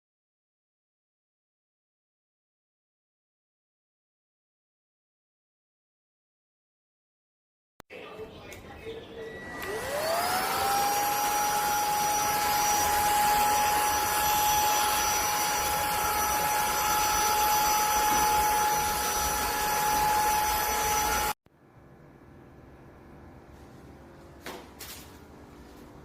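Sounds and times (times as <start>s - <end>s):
vacuum cleaner running: 9.0s - 21.4s.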